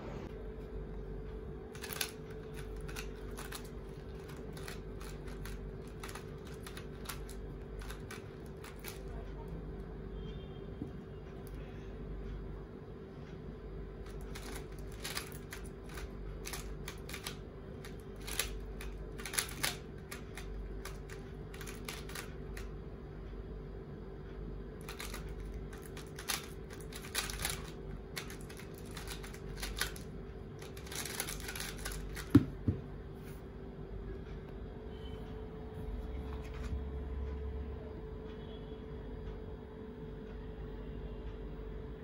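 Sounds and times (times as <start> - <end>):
faint steady hum: 0.0 - 42.0
puzzle cube clicking and rattling: 1.7 - 9.1, 14.0 - 22.7, 24.8 - 32.6.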